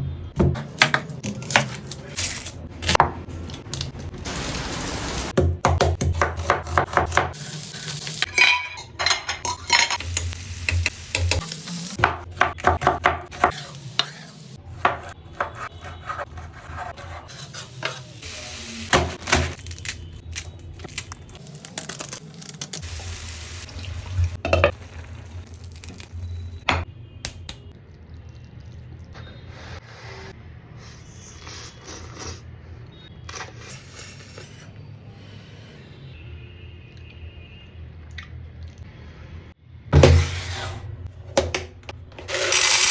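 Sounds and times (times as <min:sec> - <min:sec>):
metal utensils scraping pans: 0:08.2 - 0:10.4
food sizzling: 0:09.5 - 0:12.3, 0:17.4 - 0:19.7, 0:21.4 - 0:26.6.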